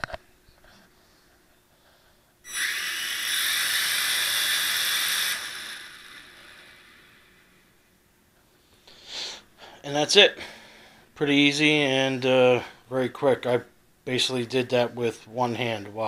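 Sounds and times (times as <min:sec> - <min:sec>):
quadcopter motors whining: 0:02.5 - 0:07.6.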